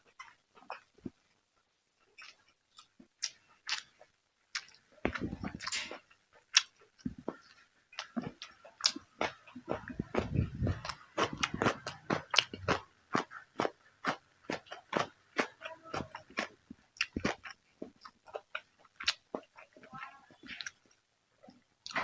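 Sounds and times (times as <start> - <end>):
person chewing food: 0.0 - 22.0
mouth clicks: 6.6 - 19.7.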